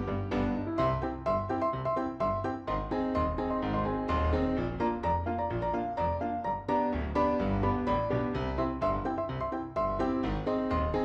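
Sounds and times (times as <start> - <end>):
keyboard melody: 0.0 - 11.0
bass line: 2.7 - 6.1, 6.9 - 9.2.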